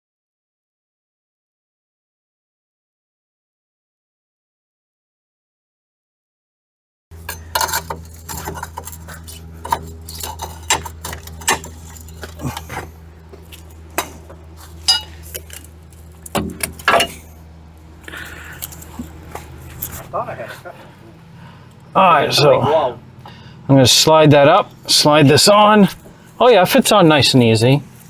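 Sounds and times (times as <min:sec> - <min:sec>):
steady low hum: 0:07.1 - 0:28.0
metal tools clinking and clattering: 0:07.2 - 0:17.3.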